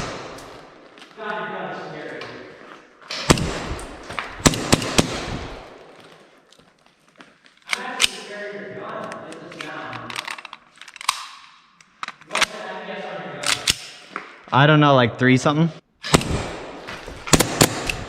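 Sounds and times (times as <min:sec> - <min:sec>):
airsoft gun shots: 0:03.2 - 0:05.7, 0:16.1 - 0:18.0.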